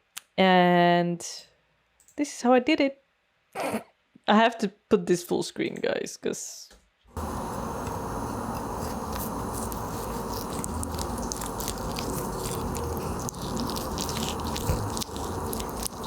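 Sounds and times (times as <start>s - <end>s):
crunching and crackling: 7.2s - 16.0s.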